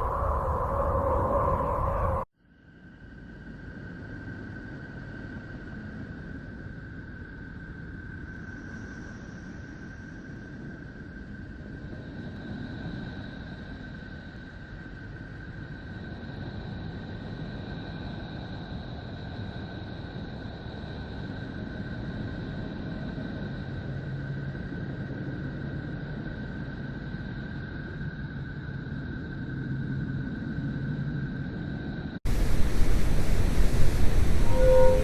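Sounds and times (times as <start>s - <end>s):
low rumbling drone: 32.3s - 35.0s
thin high tones: 32.4s - 35.0s.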